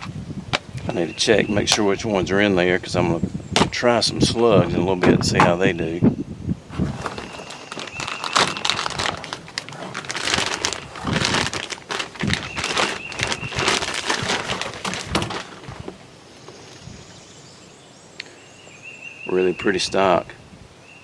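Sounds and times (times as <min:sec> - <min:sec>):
packaging crinkling and rustling: 0:06.7 - 0:16.8.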